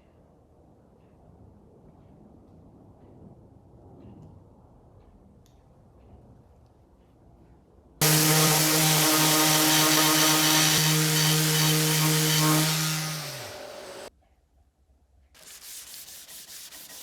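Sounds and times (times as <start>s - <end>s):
electric power tool motor: 8.0s - 14.1s
motor winding down: 8.0s - 14.1s.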